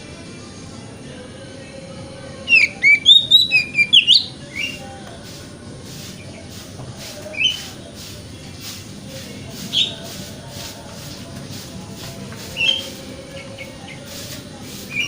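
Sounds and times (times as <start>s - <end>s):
bird singing whistled notes: 2.5s - 5.0s, 7.3s - 7.8s, 9.7s - 10.2s, 12.4s - 14.2s.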